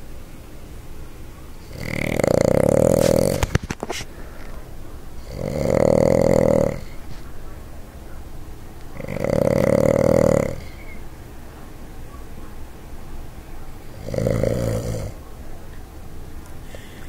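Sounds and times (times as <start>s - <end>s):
dog snoring: 1.6s - 3.6s, 5.2s - 7.1s, 8.9s - 11.0s, 13.9s - 15.2s.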